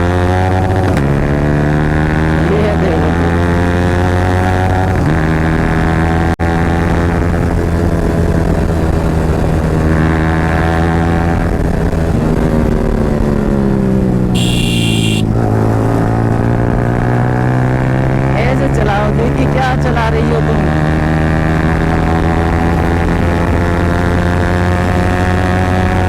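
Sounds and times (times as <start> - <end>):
motorcycle engine revving: 11.0 - 18.4
high tone: 14.4 - 15.3.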